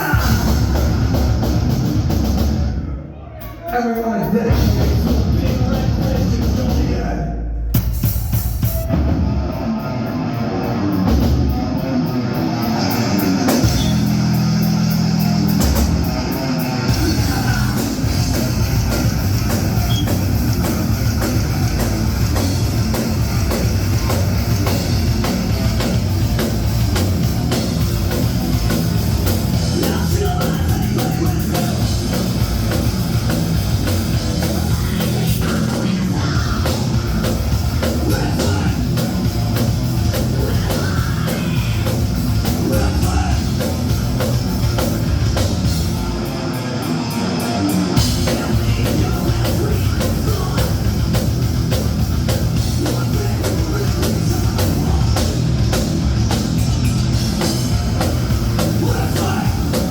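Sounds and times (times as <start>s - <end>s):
bass guitar: 0.0s - 59.9s
drum kit: 0.0s - 59.9s
electric guitar: 8.6s - 59.9s.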